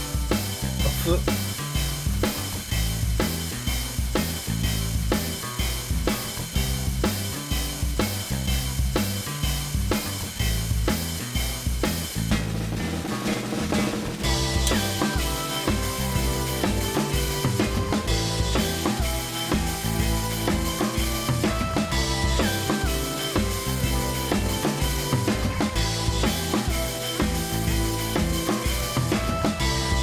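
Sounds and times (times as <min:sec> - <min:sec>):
background music with drum beat: 0:00.0 - 0:30.0
higher melody: 0:14.2 - 0:30.0.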